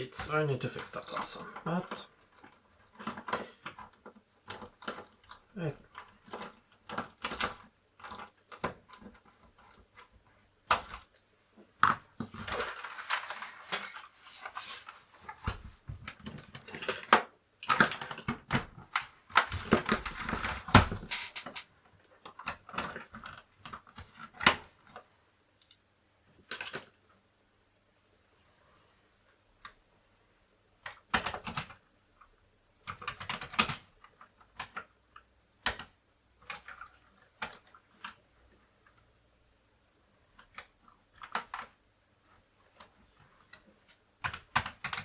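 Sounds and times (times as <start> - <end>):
clicks and knocks on plastic: 0.2 - 14.0, 15.2 - 25.1, 32.8 - 38.3
scraping and rustling: 12.2 - 16.9.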